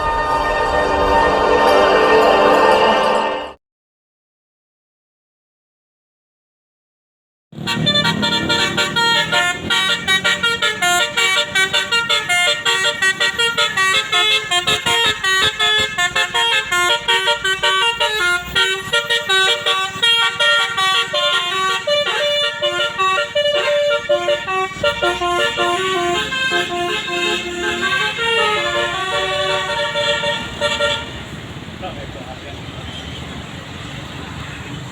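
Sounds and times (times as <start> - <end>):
musical air horn playing tune: 7.6 - 31.2.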